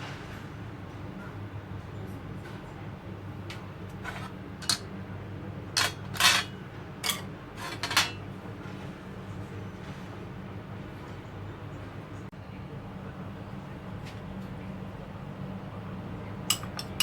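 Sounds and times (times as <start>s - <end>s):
kitchen utensils and dishes clattering: 3.9s - 4.9s, 5.8s - 8.3s, 16.5s - 17.0s.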